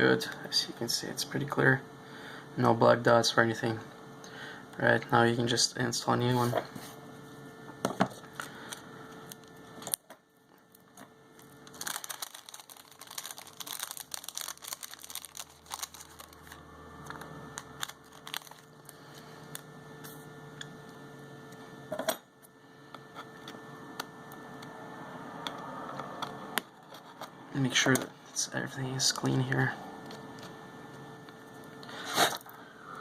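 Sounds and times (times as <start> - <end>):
low electrical hum: 0.0 - 33.0
small clicks and crinkling: 8.4 - 19.6.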